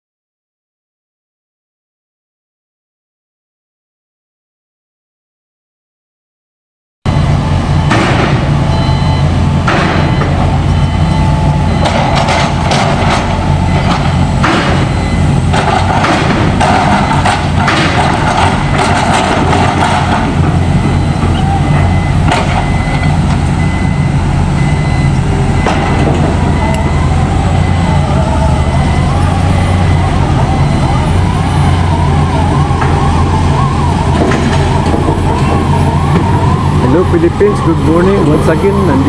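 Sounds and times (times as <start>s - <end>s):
heavy engine running: 7.1s - 39.0s
knocks and clatter: 7.8s - 8.6s, 9.6s - 10.9s, 11.7s - 23.5s, 32.7s - 36.6s.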